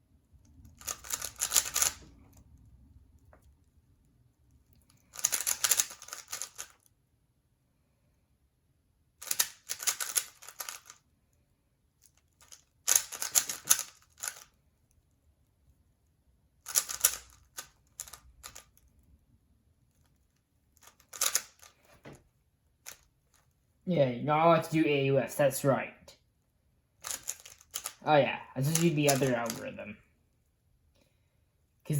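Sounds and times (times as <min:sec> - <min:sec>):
puzzle cube plastic clicking: 0:00.4 - 0:03.8, 0:04.7 - 0:06.9, 0:09.2 - 0:11.0, 0:12.0 - 0:15.1, 0:16.6 - 0:19.0, 0:19.9 - 0:22.0, 0:22.8 - 0:23.6, 0:27.0 - 0:28.0, 0:28.7 - 0:29.7.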